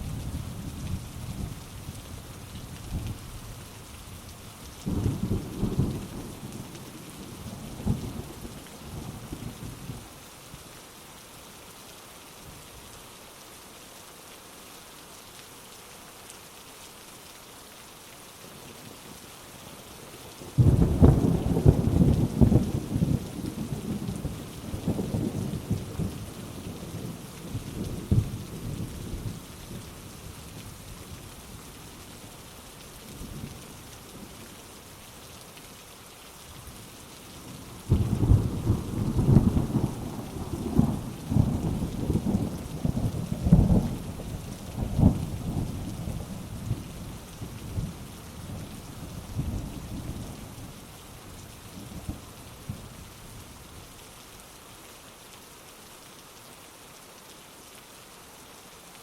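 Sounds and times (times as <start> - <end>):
heavy rain falling: 0.0 - 59.0
thunder rumbling: 37.9 - 44.2.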